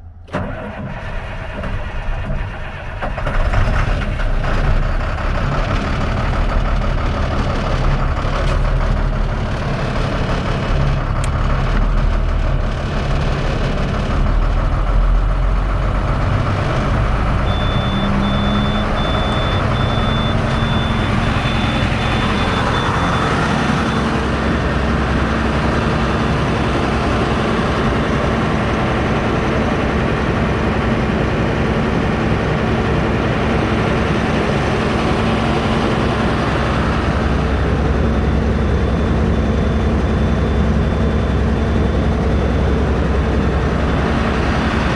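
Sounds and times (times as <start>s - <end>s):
truck diesel engine running: 0.0s - 44.9s
reversing alarm beeping: 17.0s - 24.7s.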